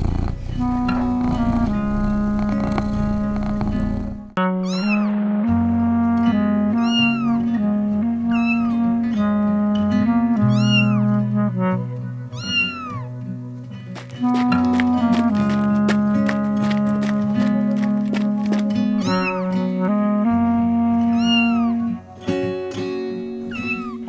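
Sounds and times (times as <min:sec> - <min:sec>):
background music of held notes: 0:00.0 - 0:24.0
cat meowing: 0:04.6 - 0:05.2, 0:06.8 - 0:07.5, 0:08.3 - 0:08.8, 0:10.5 - 0:11.1, 0:12.3 - 0:13.2, 0:19.0 - 0:19.6, 0:21.1 - 0:22.0, 0:23.5 - 0:24.0.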